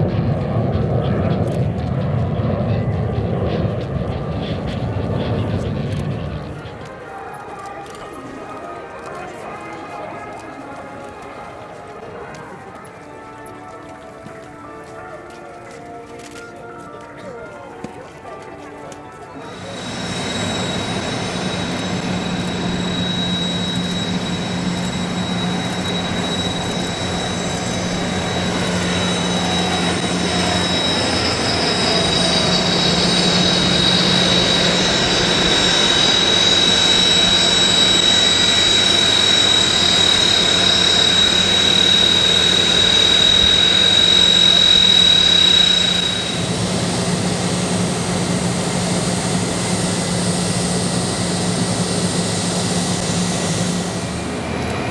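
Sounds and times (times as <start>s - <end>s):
high turbine whine: 0.0s - 8.0s, 19.4s - 54.9s
aircraft engine drone: 0.0s - 14.7s, 19.4s - 54.9s.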